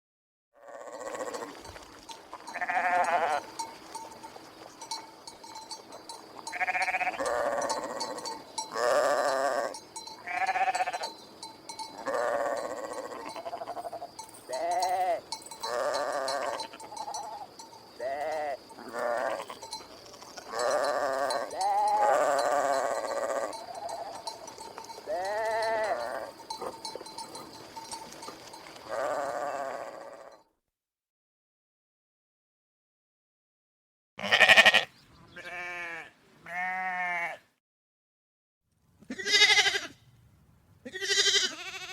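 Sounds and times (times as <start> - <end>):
sheep bleating: 0.6 - 1.8, 2.4 - 3.6, 6.4 - 11.2, 11.8 - 28.2, 28.8 - 30.4, 34.2 - 37.5, 39.1 - 40.0, 40.8 - 41.9.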